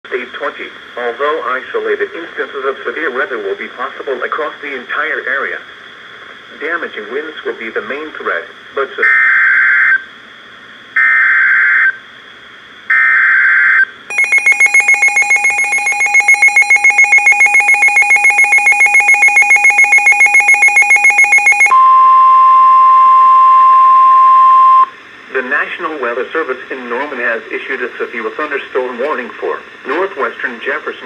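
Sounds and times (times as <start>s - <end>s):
rapid electronic pulsed beeping: 14.1s - 21.8s
steady warning alarm tone: 14.1s - 24.9s.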